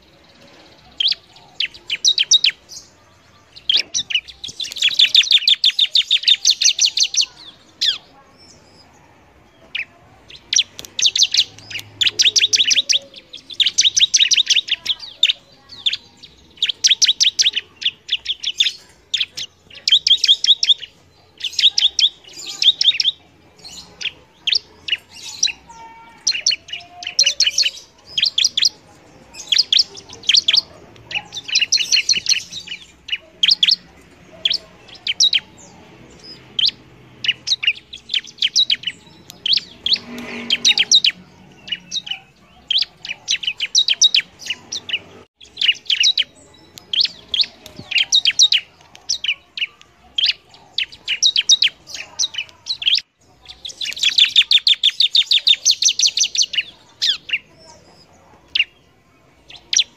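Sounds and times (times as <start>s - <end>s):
bird singing sharp chirps: 0.0s - 9.0s, 9.6s - 58.8s.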